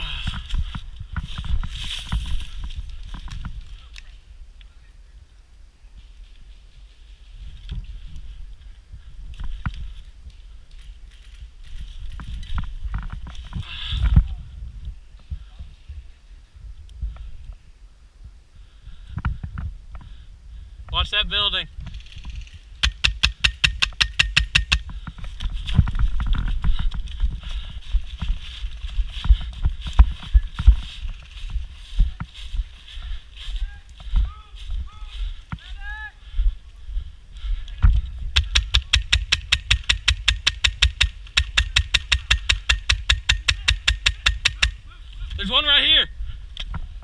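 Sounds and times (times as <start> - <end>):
running footsteps: 0.0 - 4.0, 21.8 - 45.5.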